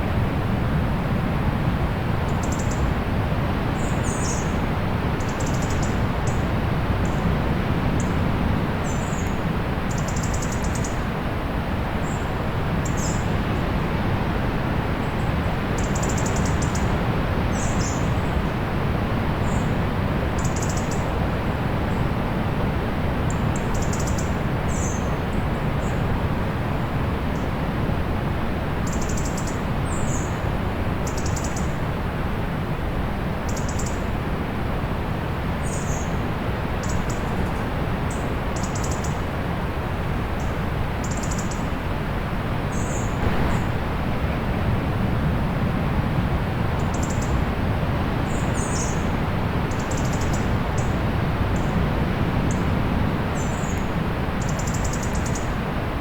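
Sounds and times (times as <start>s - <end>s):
distant sea surf: 21.0s - 56.0s
small birds chirping: 42.7s - 43.9s, 48.3s - 49.1s, 53.3s - 55.6s.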